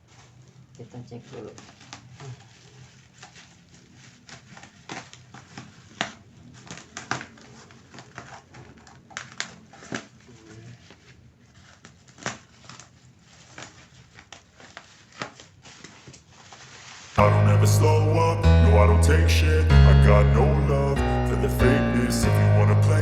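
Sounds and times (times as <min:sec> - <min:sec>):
packaging crinkling and rustling: 0:00.0 - 0:17.2.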